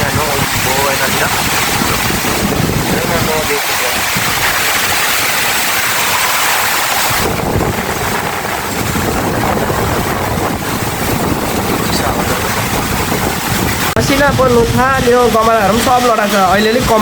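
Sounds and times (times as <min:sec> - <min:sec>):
heavy rain: 0:00.0 - 0:17.0
strong gusting wind: 0:00.0 - 0:17.0
wind buffeting on microphone: 0:00.0 - 0:17.0.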